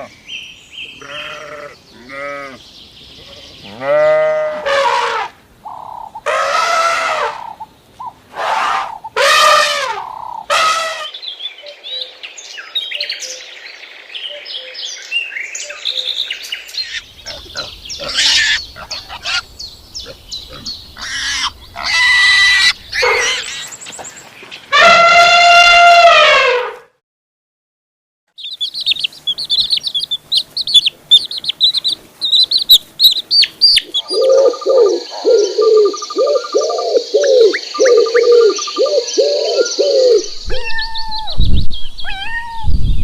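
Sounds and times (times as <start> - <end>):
animal bleats: 1.0 - 2.6, 3.2 - 5.3, 17.3 - 19.4
long loud animal call: 1.0 - 2.6, 3.3 - 7.6, 8.3 - 11.1, 20.5 - 23.5, 24.7 - 26.8
bird chirps and twitters: 28.4 - 43.0.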